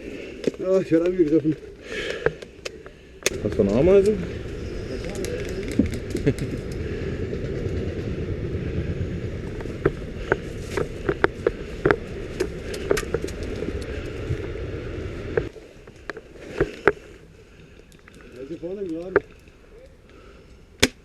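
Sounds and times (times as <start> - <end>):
steady low rumble: 2.5 - 15.6.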